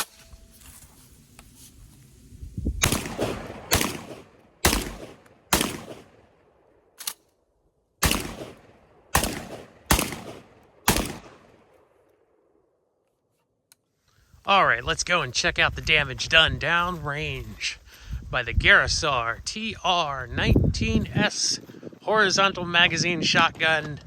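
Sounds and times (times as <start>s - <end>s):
shotgun shots: 2.8s - 7.2s, 8.0s - 11.9s.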